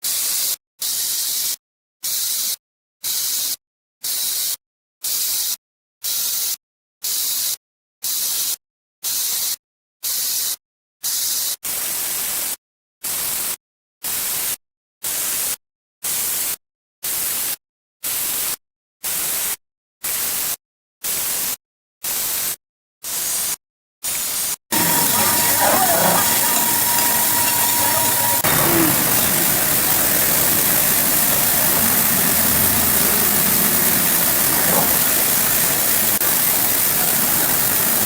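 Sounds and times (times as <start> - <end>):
bursts of static hiss: 24.8 - 38.0.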